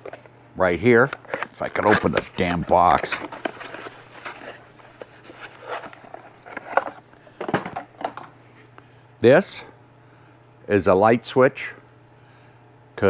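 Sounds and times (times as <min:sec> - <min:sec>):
packaging rustling and clicking: 0:00.0 - 0:00.3, 0:00.9 - 0:08.4
faint steady hum: 0:00.0 - 0:13.0.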